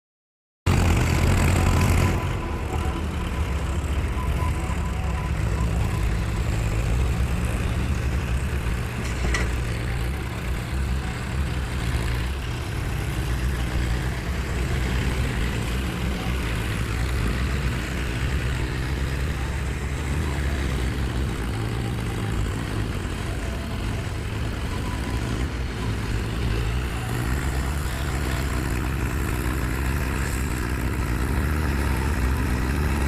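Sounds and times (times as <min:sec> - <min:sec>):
tractor diesel engine running: 0:00.7 - 0:33.0.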